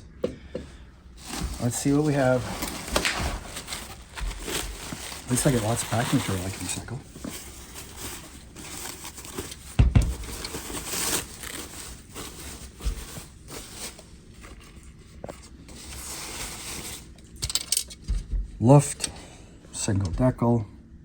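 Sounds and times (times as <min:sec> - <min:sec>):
packing material rustling: 0:01.1 - 0:18.0
heavy thump: 0:09.8 - 0:10.3.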